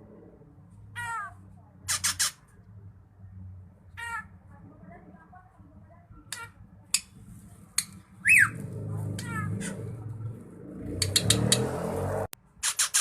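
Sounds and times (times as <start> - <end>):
low rumbling noise: 0.0 - 1.5, 4.4 - 12.3
bird singing harsh calls: 7.8 - 8.6.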